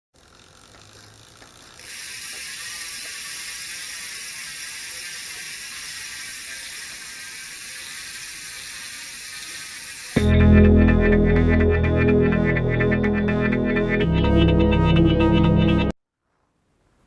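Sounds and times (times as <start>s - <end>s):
bicycle freehub buzzing: 0.1s - 11.1s
music: 10.2s - 15.9s.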